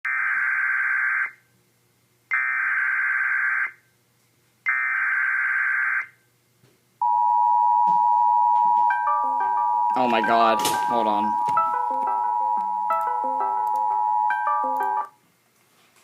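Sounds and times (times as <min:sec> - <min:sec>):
two-tone attention signal: 0:07.0 - 0:15.1.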